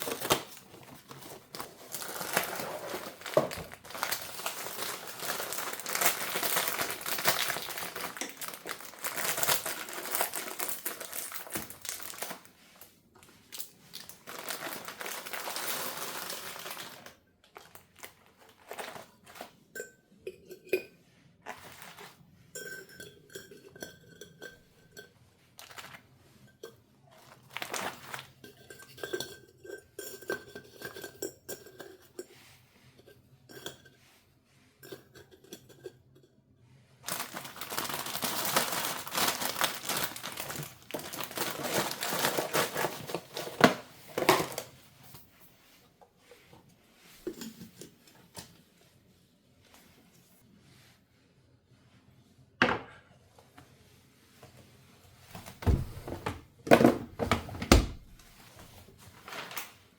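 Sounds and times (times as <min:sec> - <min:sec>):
dishes and cutlery clinking: 0:22.5 - 0:25.2.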